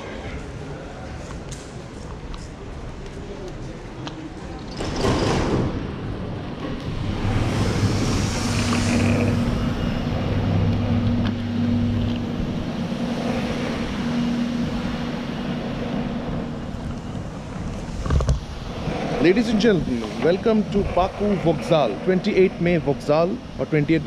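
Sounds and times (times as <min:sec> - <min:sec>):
road noise: 0:00.0 - 0:24.0
engine hum: 0:05.6 - 0:24.0.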